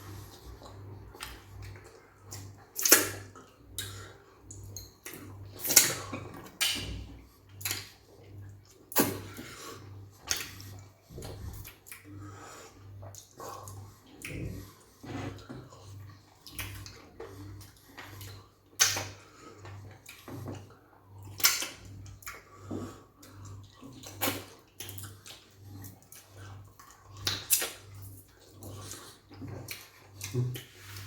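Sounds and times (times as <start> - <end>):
chewing and slurping: 0.0 - 6.7, 7.4 - 31.0
wet eating sounds: 0.0 - 31.0
lip smacks: 2.3 - 4.0, 10.3 - 10.6, 18.0 - 19.2, 26.8 - 27.9.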